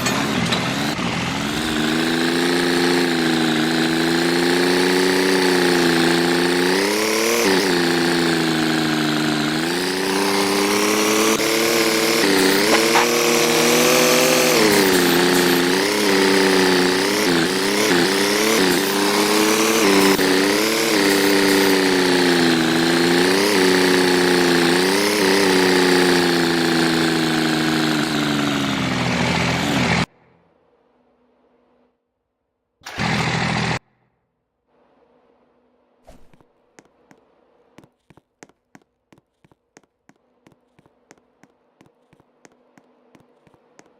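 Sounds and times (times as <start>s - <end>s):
engine revving: 0.0s - 30.1s, 32.8s - 33.8s.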